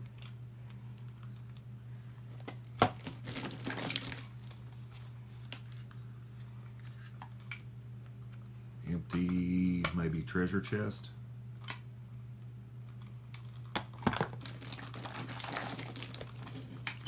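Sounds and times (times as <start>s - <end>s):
steady low hum: 0.0s - 17.0s
crinkling rustle: 2.2s - 6.0s, 14.4s - 17.0s.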